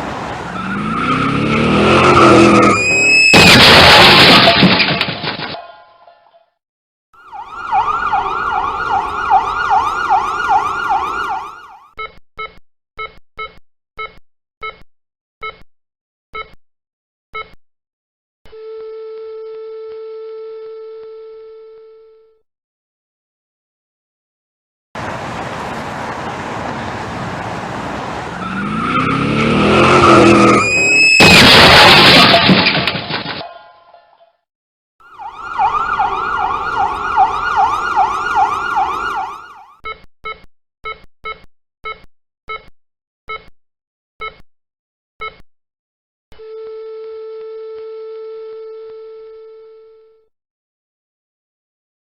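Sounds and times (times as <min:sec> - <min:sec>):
tyres skidding: 0:00.0 - 0:05.0, 0:25.0 - 0:33.4
wavering siren: 0:00.4 - 0:03.3, 0:07.2 - 0:11.9, 0:28.4 - 0:31.2, 0:35.0 - 0:39.8, 0:46.4 - 0:50.0
car engine revving: 0:00.6 - 0:02.8, 0:25.0 - 0:30.7
car crash: 0:02.0 - 0:05.6, 0:25.0 - 0:33.5
short electronic beeps: 0:12.0 - 0:14.8, 0:15.4 - 0:15.6, 0:16.4 - 0:16.6, 0:17.3 - 0:17.6, 0:45.2 - 0:45.4.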